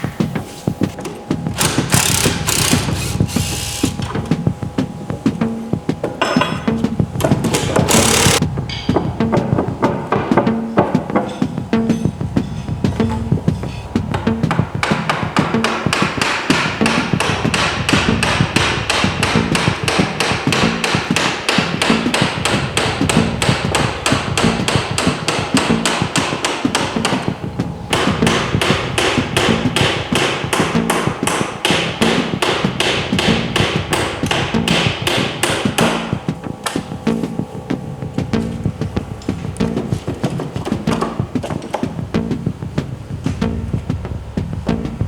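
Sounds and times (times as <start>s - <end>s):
hammer blows: 0.0s - 45.0s.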